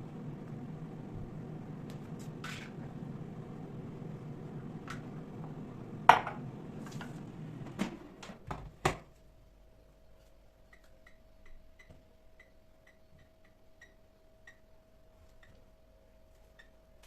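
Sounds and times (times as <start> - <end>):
faint steady hum: 0.0 - 17.0
dishes knocking: 6.1 - 6.4.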